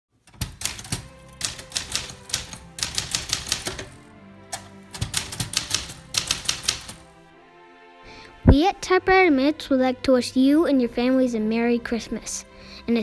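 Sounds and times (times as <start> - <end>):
background music: 0.1 - 13.0
typewriter key strikes: 0.3 - 4.0, 4.6 - 7.1.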